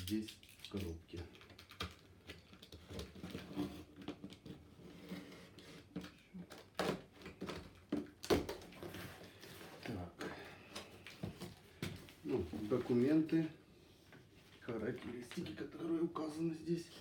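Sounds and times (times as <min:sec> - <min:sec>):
cardboard packaging rustling: 0:00.1 - 0:13.5.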